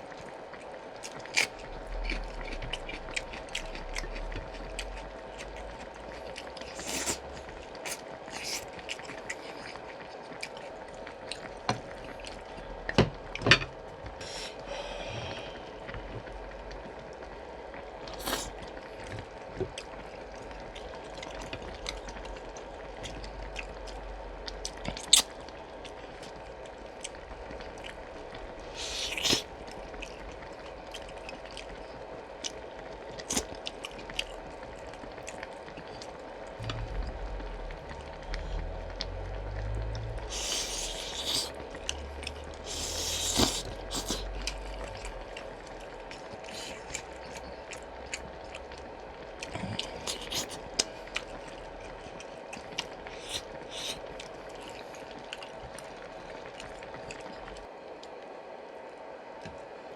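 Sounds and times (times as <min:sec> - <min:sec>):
wet chewing: 0:01.0 - 0:12.6, 0:18.1 - 0:26.4, 0:27.0 - 0:36.1, 0:38.3 - 0:58.2
slurping: 0:18.1 - 0:18.6, 0:28.6 - 0:29.5, 0:40.2 - 0:41.7, 0:42.6 - 0:45.0, 0:53.0 - 0:54.1.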